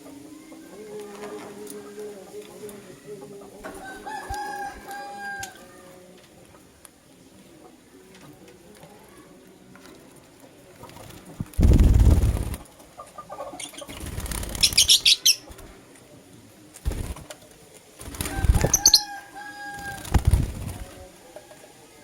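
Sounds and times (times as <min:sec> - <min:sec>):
bird wings flapping: 0:10.8 - 0:12.7, 0:13.8 - 0:15.8, 0:16.8 - 0:19.0, 0:19.8 - 0:21.1
shrill bird chirps: 0:14.6 - 0:15.5.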